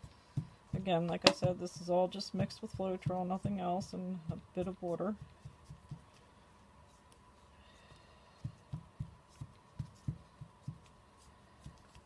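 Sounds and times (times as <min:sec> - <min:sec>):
soft dull thumps: 0:00.0 - 0:06.2.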